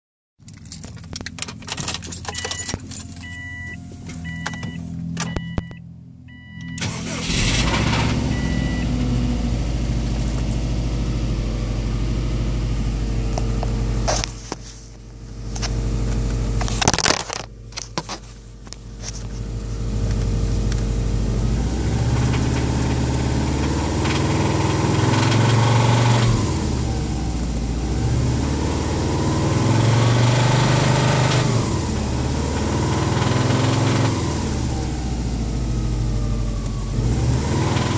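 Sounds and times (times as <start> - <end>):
keys rattling: 0.4 - 3.3
car engine starting and running: 0.4 - 37.9
electronic chime beeping: 2.3 - 6.8.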